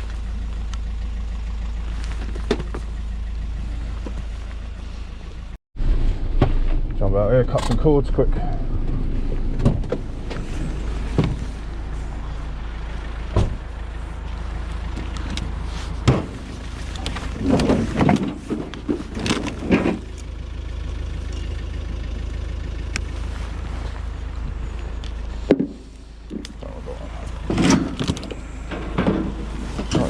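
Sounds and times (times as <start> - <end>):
van engine idling: 0.0 - 30.0
clattering handling noises: 14.9 - 20.3, 25.4 - 30.0.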